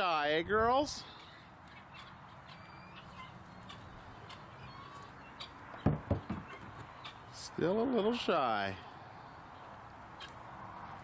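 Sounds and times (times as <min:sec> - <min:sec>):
short dull knocks: 0:05.7 - 0:06.9.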